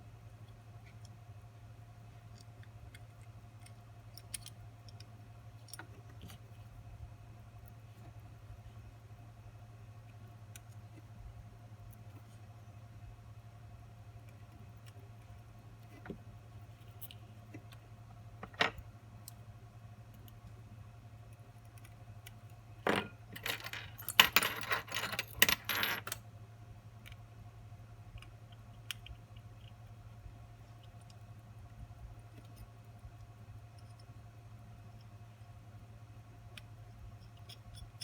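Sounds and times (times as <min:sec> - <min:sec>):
steady low hum: 0:00.0 - 0:38.0
small metal tools clicking: 0:03.6 - 0:06.4.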